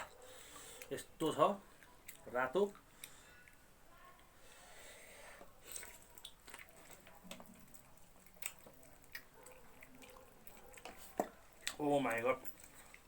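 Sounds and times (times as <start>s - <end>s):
wet chewing and smacking: 0.0s - 4.3s, 5.2s - 13.0s.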